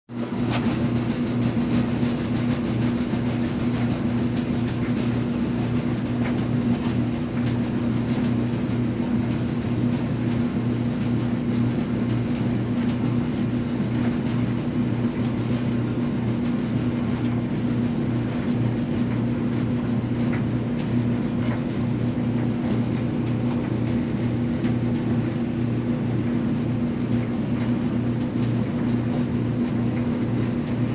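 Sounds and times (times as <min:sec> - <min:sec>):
clothes dryer humming: 0:00.1 - 0:30.9.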